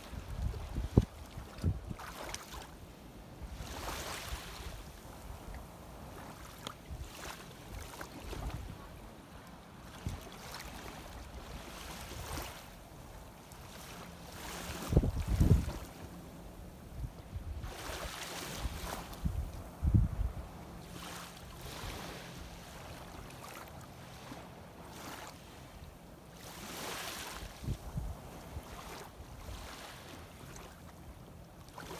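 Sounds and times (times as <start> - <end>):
wind buffeting microphone: 0.0 - 2.0, 14.8 - 15.9, 18.6 - 20.5
sea water sloshing and lapping: 0.0 - 31.9.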